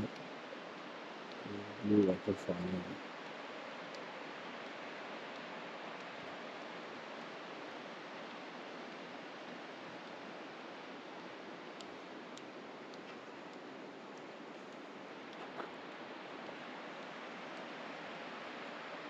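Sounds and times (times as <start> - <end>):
faint ticks: 0.0 - 1.5, 3.8 - 6.6, 11.7 - 18.1.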